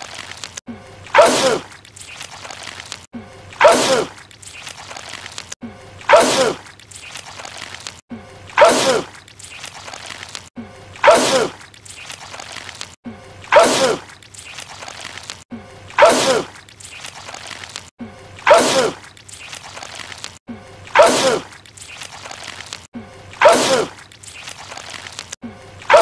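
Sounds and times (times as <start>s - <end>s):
man sneezing: 16.0s - 16.5s, 23.4s - 23.9s.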